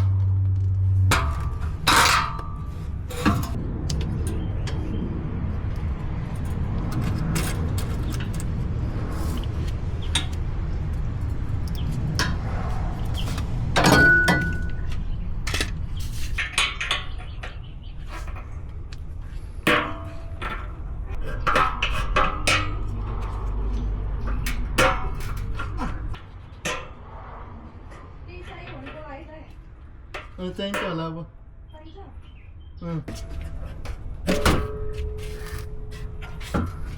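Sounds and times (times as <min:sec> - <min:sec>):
steady low rumble: 0:00.0 - 0:30.2, 0:31.3 - 0:36.9
metal tools clinking and knocking: 0:01.1 - 0:03.6, 0:13.2 - 0:14.9.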